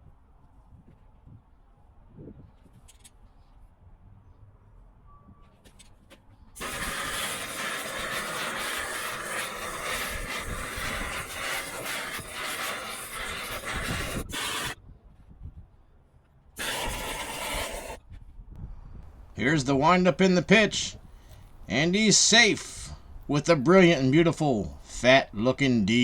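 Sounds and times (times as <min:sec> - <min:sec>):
gas torch flame rushing: 0:06.6 - 0:14.8, 0:16.6 - 0:18.0.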